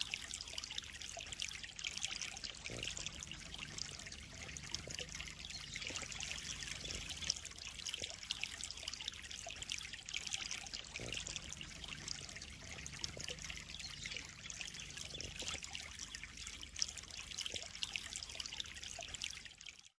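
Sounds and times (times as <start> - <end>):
pond water trickling and splashing: 0.0 - 20.0.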